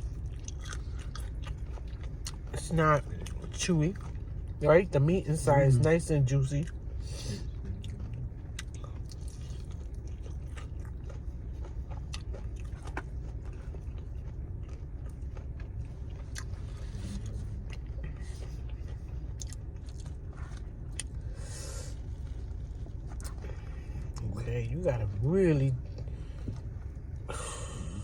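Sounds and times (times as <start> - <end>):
chewing and crunching: 0.0 - 28.0
low steady rumble: 0.0 - 28.0.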